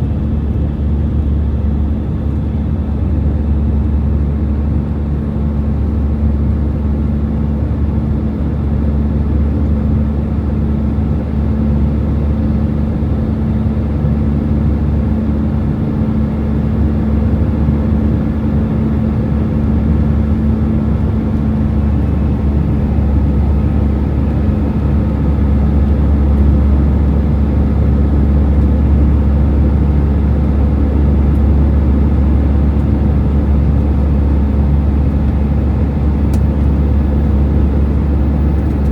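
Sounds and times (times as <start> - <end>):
aircraft engine rumble: 0.0 - 38.9
steady cabin hum: 17.9 - 38.9.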